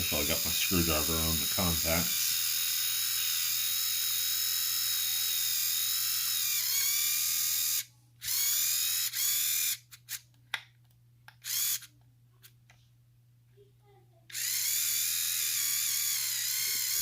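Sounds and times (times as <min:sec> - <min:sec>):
small electric motor whining: 0:00.0 - 0:10.2, 0:11.4 - 0:11.9, 0:14.3 - 0:17.0.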